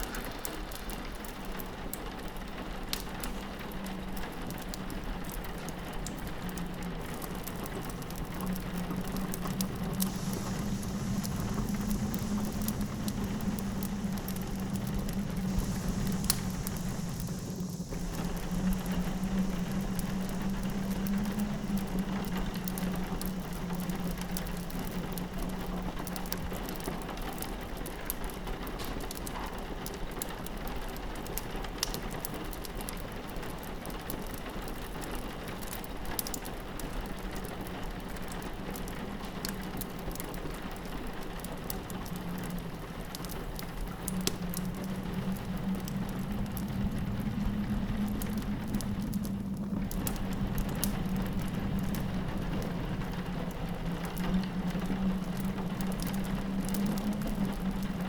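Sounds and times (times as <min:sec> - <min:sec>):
fireplace crackling and popping: 0:00.0 - 0:58.0
rain on a window: 0:00.0 - 0:58.0
low steady drone: 0:03.1 - 0:27.9, 0:39.0 - 0:58.0.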